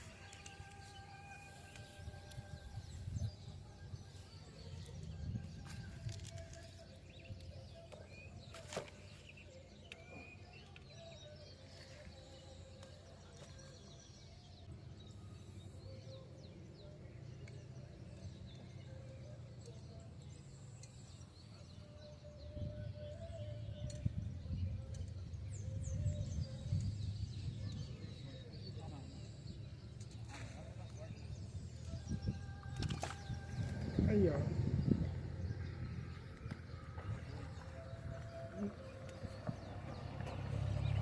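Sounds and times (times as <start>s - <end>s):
birds chirping and calling: 0.0s - 41.0s
low rumble: 33.3s - 41.0s.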